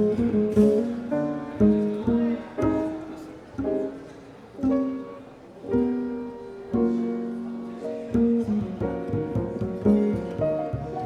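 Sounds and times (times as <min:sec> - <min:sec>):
jazz piano: 0:00.0 - 0:11.0
plucked double bass: 0:08.0 - 0:11.0.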